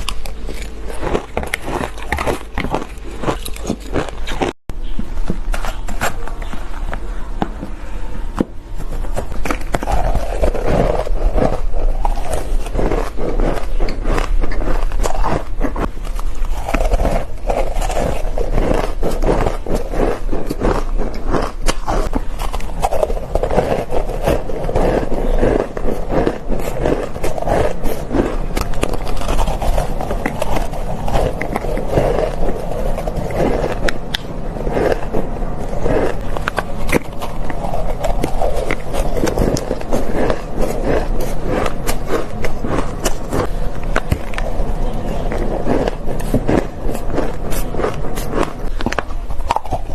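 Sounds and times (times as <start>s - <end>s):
ice being crunched: 9.0s - 49.9s.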